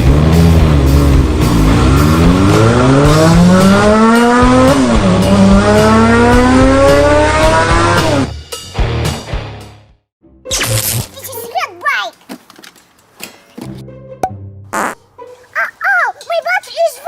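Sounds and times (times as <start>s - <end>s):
car engine accelerating: 0.0s - 8.3s.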